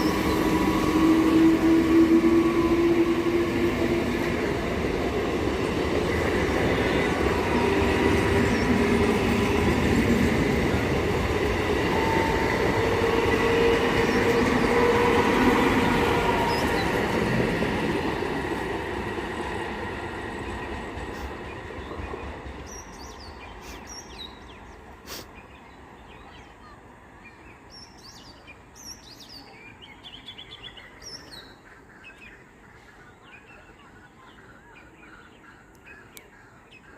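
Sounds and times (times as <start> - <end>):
train running on rails: 0.0 - 36.9
birds chirping: 4.8 - 10.3, 20.6 - 36.9.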